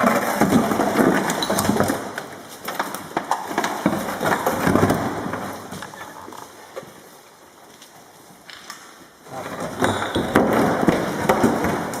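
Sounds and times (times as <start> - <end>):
hard objects knocking and clattering: 0.0 - 6.9, 9.4 - 12.0.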